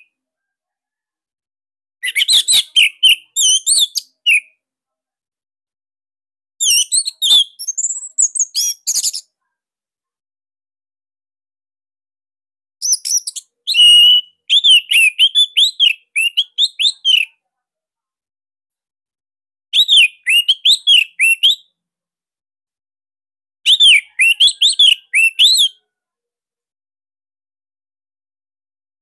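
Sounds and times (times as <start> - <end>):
bird singing whistled notes: 2.0 - 4.6, 6.6 - 9.3, 12.8 - 17.4, 19.8 - 21.8, 23.7 - 25.8.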